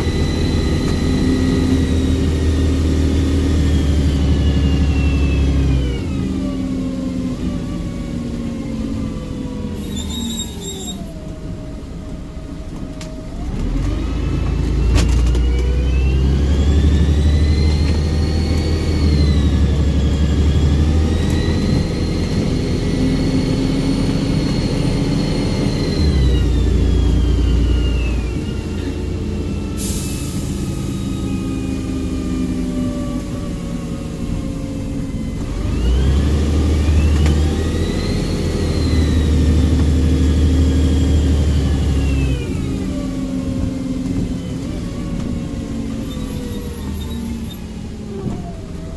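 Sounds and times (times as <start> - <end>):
diesel bus engine pulling away: 0.0 - 48.9
turbo whistle: 9.8 - 11.2
air brake hiss: 29.7 - 31.1.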